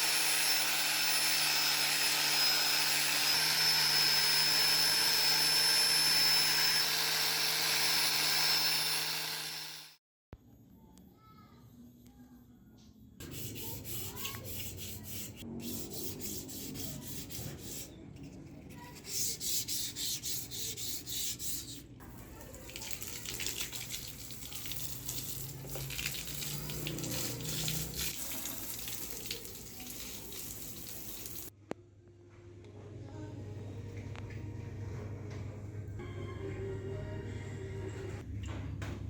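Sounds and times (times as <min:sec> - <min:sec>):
water running and splashing: 0:22.2 - 0:31.5.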